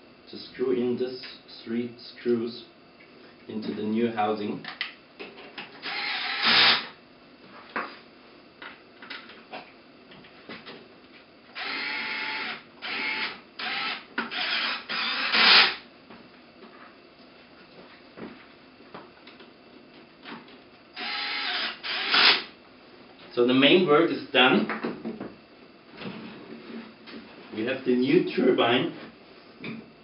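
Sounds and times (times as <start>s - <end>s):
power screwdriver whirring: 5.8s - 6.9s, 11.6s - 15.8s, 21.0s - 22.5s.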